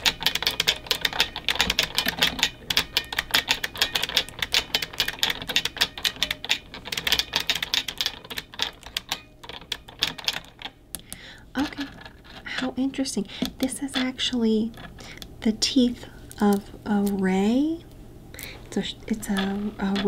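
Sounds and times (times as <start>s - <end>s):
mechanical keyboard typing: 0.0s - 10.7s.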